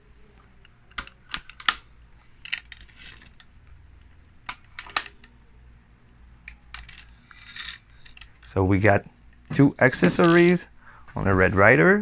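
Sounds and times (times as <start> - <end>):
clicks of small parts handled: 2.4 - 3.5, 6.5 - 8.4.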